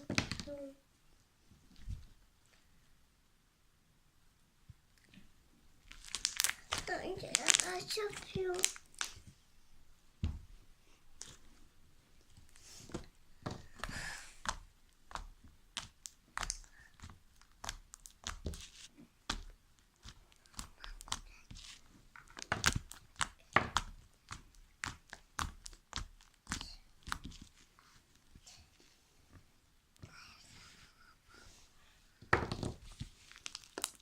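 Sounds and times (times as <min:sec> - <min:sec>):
slime crackling and popping: 0:05.8 - 0:09.2, 0:13.7 - 0:27.6, 0:32.8 - 0:34.0.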